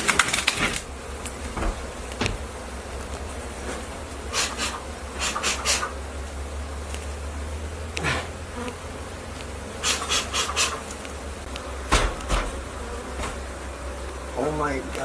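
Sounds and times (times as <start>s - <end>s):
bees buzzing in a swarm: 0.0s - 15.0s
sharp knocks: 1.5s - 2.5s, 11.8s - 12.6s
rasping scrapes: 3.6s - 6.0s, 9.8s - 11.0s.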